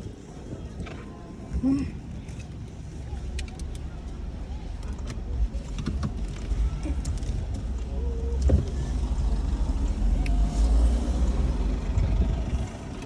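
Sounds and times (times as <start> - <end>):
car rumble in motion: 0.0 - 13.0
faint clicks: 2.2 - 8.8.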